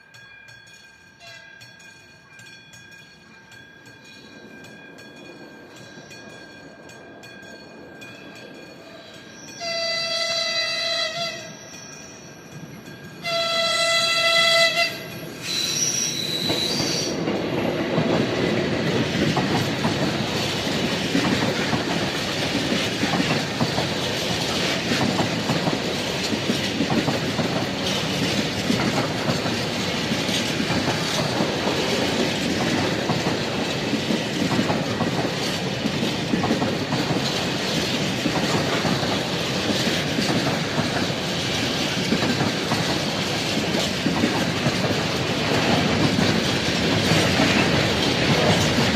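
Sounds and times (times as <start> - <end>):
train passing rumble: 0.0 - 48.9
wheels clicking over rail joints: 0.1 - 48.9
train horn blasts: 9.6 - 11.6, 13.2 - 15.9.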